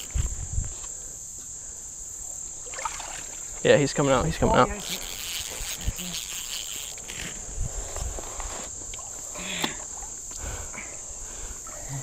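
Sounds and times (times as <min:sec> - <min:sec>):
high insect chorus: 0:00.0 - 0:12.0
rustles: 0:04.8 - 0:10.5.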